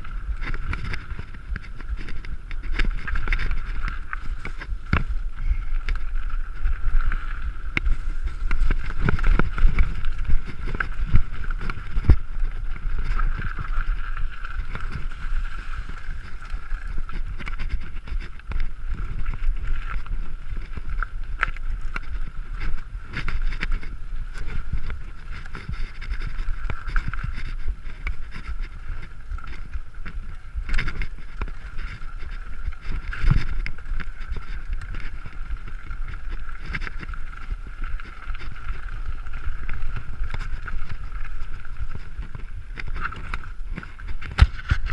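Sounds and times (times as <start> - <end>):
mountain bike rattling: 0.0 - 44.9
wind buffeting microphone: 0.0 - 44.9.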